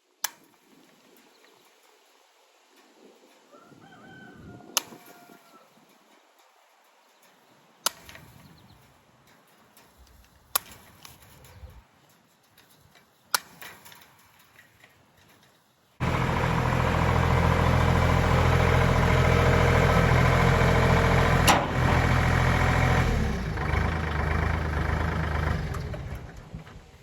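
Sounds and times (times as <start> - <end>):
engine running: 16.0 - 27.0.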